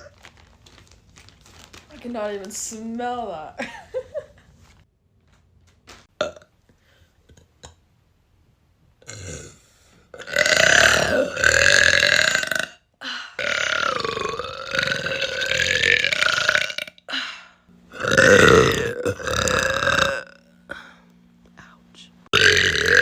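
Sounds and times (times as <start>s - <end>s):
woman burping loudly: 6.2s - 6.5s, 9.0s - 17.2s, 17.9s - 20.8s, 22.3s - 23.0s.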